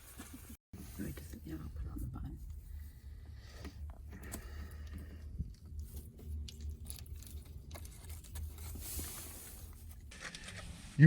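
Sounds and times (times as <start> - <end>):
sandwich wrapper rustling: 5.7 - 10.4.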